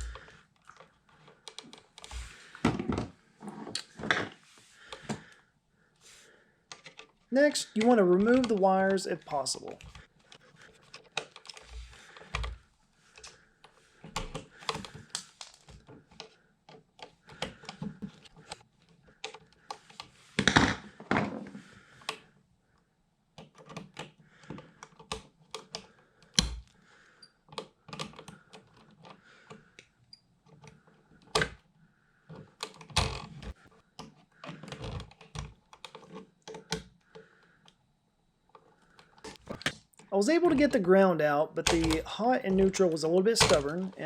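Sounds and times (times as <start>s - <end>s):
hand tools clicking and scraping: 6.7s - 12.5s, 41.6s - 44.0s.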